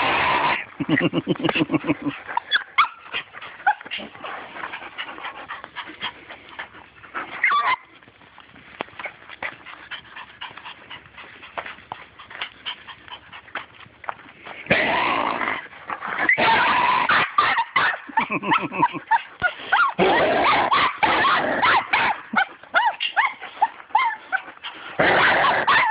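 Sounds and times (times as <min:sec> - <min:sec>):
small dog whining and squealing: 0:02.4 - 0:04.1, 0:07.3 - 0:08.0, 0:15.6 - 0:18.0, 0:19.1 - 0:25.9.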